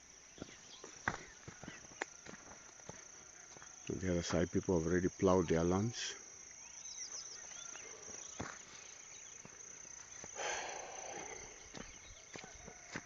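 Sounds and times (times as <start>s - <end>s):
insect trill: 0.0s - 13.0s
bird chirps: 6.5s - 9.5s, 10.1s - 12.8s.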